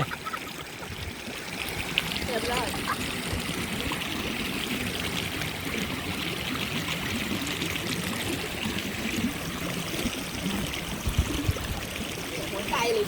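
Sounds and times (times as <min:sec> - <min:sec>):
water rushing over rocks: 0:00.0 - 0:13.0.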